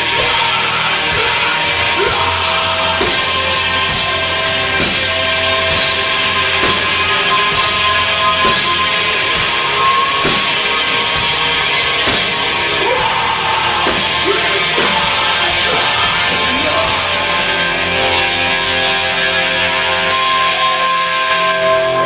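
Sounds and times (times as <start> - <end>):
distorted electric guitars: 0.0 - 22.0
drum hits: 2.2 - 17.7.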